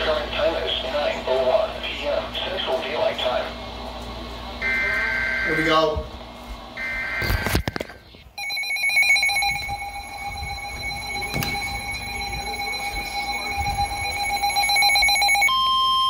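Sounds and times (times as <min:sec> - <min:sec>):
pulsing electronic alarm: 0:04.6 - 0:05.8, 0:06.8 - 0:07.6, 0:08.4 - 0:16.0
short tone: 0:08.4 - 0:16.0.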